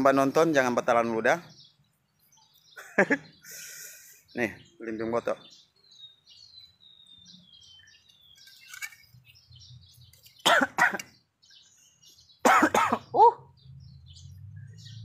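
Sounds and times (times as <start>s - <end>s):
man coughing: 10.4s - 11.1s, 12.4s - 13.3s.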